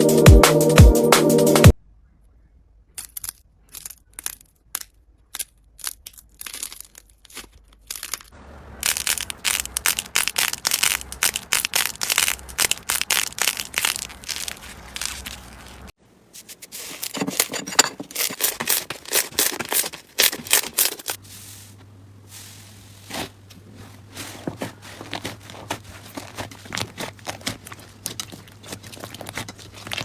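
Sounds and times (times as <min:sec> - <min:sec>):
slime crackling: 0:06.3 - 0:15.9, 0:18.2 - 0:21.2, 0:23.0 - 0:30.0.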